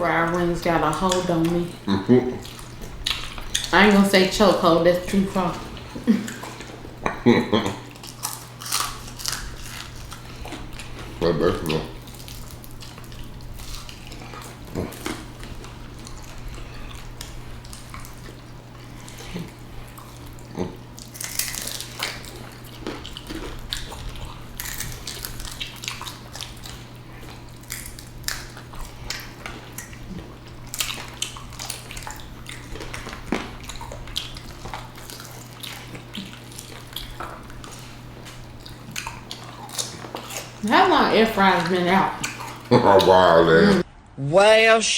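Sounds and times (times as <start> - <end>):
steady low hum: 0.0 - 44.9
crunchy chewing: 0.9 - 4.0, 5.6 - 40.7, 41.3 - 43.6.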